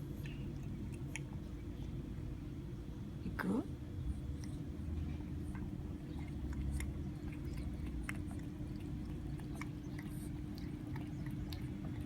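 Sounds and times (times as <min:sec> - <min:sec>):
cat lapping water: 0:00.0 - 0:01.8, 0:05.6 - 0:12.0
steady low hum: 0:00.0 - 0:12.0.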